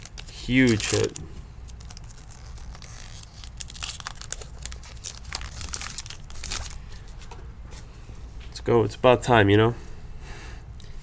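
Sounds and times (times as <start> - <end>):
foil wrappers crinkling and tearing: 0.0 - 7.3.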